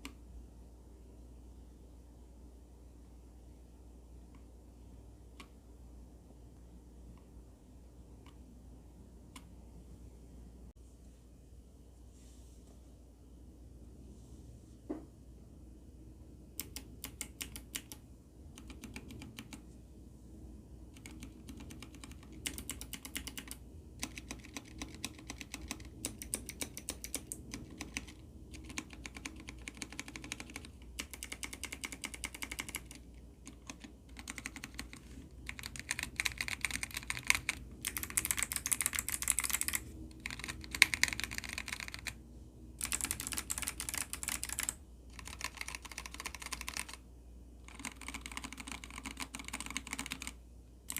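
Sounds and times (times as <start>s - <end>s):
fast typing on mechanical keyboard: 16.6s - 19.6s, 20.9s - 42.2s, 42.8s - 47.0s, 47.6s - 50.9s.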